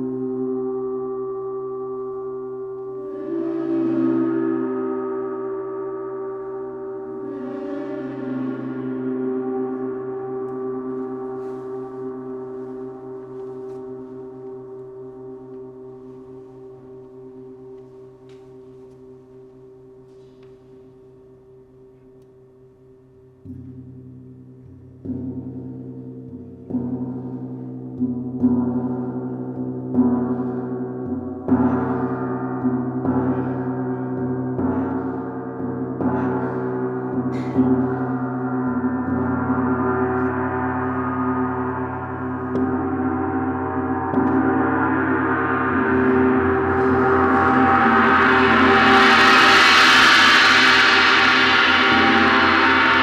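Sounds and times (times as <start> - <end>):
large gong strokes: 2.6 - 16.0, 26.3 - 53.0.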